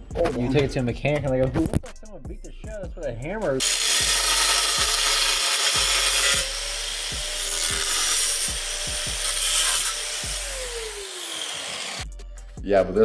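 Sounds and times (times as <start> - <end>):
power tool cutting sheet metal: 3.6 - 12.1.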